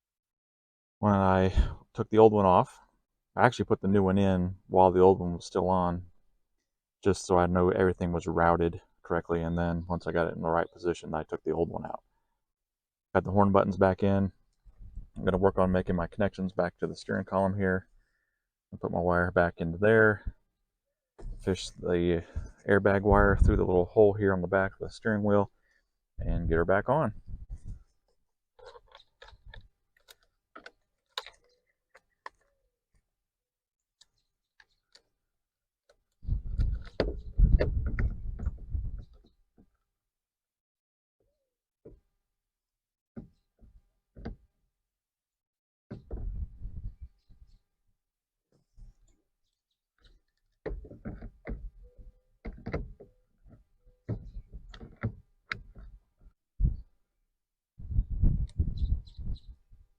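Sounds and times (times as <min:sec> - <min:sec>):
plastic parts clicking and tapping: 0:28.6 - 0:32.6.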